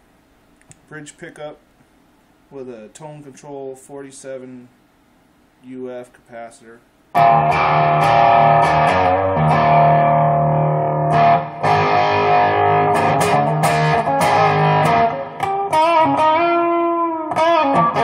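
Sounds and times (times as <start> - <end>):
overdriven electric guitar: 7.2 - 18.0.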